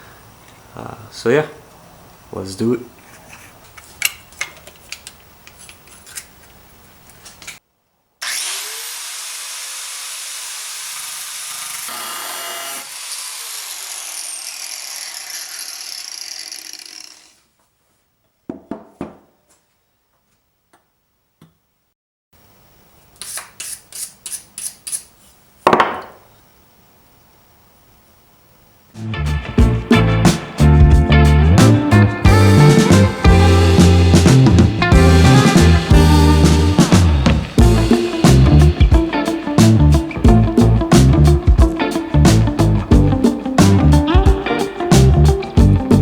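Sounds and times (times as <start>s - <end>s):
rotary power tool whining: 8.2s - 17.4s.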